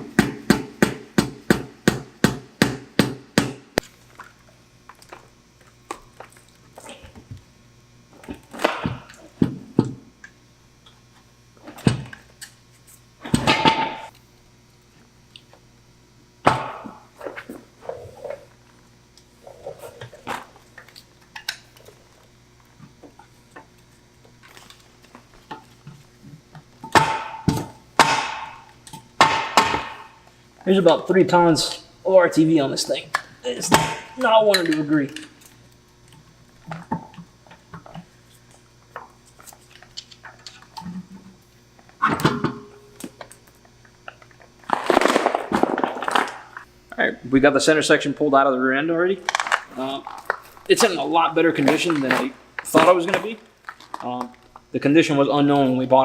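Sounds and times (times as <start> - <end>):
loud ringing metal strikes: 26.9 - 28.6.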